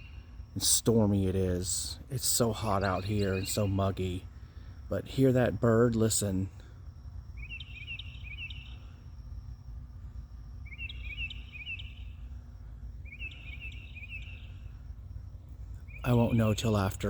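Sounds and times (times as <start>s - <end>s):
bird chirping: 0.0s - 4.3s, 7.3s - 9.1s, 10.0s - 17.0s
steady low hum: 0.0s - 17.0s.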